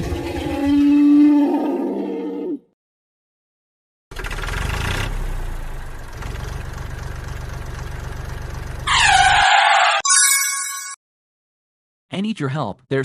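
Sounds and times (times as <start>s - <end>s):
vehicle engine starting and idling: 4.1s - 9.2s
phone ringtone: 10.0s - 11.0s.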